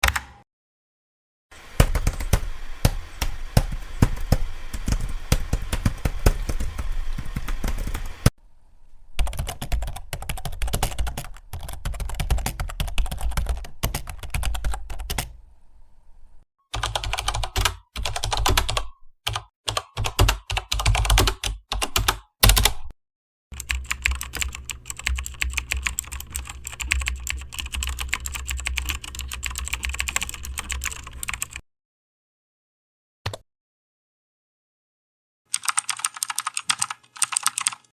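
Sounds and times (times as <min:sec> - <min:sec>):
fast typing on keyboard: 0:01.8 - 0:08.2, 0:09.2 - 0:15.4, 0:16.7 - 0:22.9, 0:23.6 - 0:31.6, 0:35.5 - 0:37.9.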